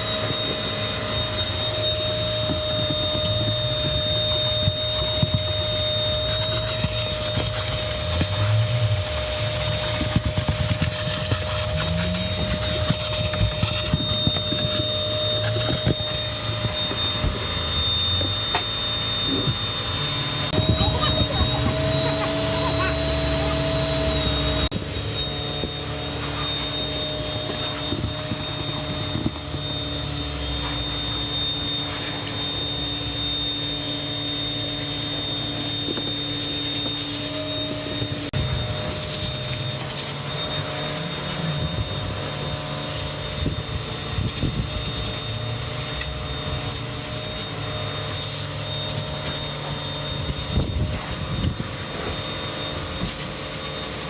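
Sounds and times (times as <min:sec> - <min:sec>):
rubbing and scraping of cleaning: 0:00.0 - 0:32.5
vacuum cleaner motor whining: 0:00.0 - 0:54.0.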